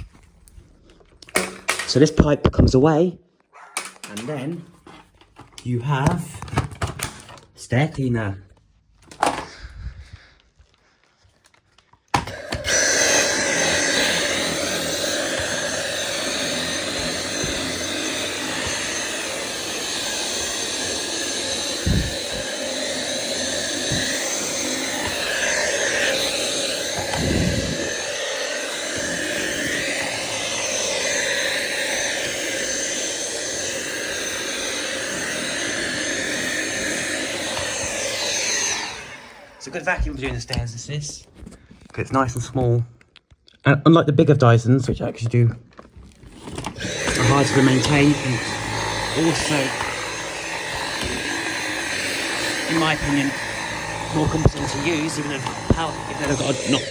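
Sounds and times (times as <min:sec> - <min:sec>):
cordless vacuum running: 0:01.2 - 0:02.0, 0:09.1 - 0:09.6, 0:12.1 - 0:40.7, 0:46.2 - 0:56.9.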